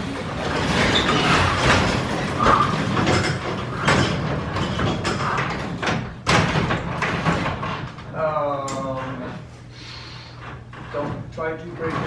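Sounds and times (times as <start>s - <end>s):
garage door rattling and scraping: 0.0s - 12.0s
knocks: 0.4s - 8.0s.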